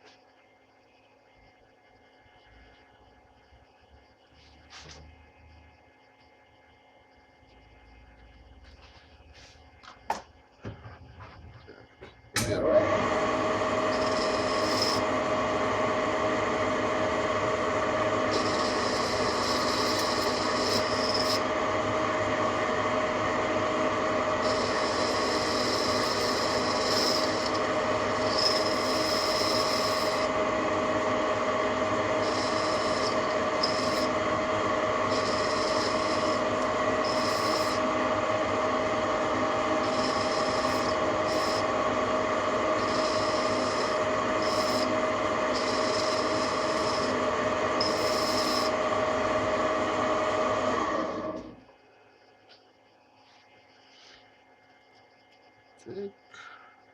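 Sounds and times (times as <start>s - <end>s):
lathe drive whine: 0.0s - 55.6s
cutting tool hiss: 12.4s - 49.0s.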